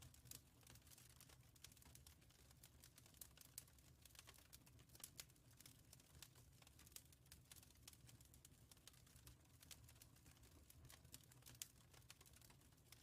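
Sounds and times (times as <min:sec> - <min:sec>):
fire crackling and popping: 0:00.0 - 0:13.0.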